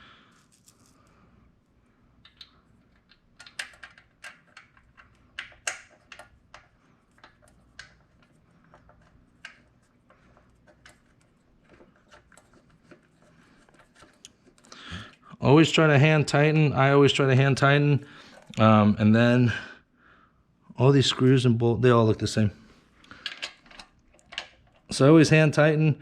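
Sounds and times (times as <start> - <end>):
metal parts clicking and clinking: 2.2 - 14.7, 23.2 - 24.9.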